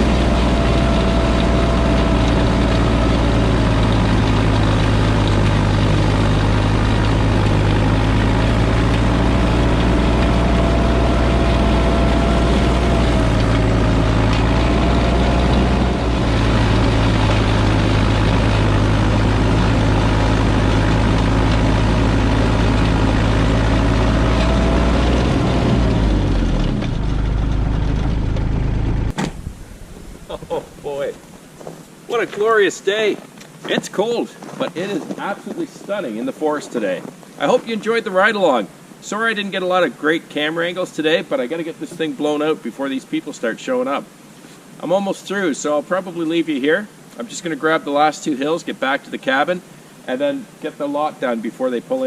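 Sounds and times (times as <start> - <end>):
tractor diesel engine running: 0.0 - 32.2.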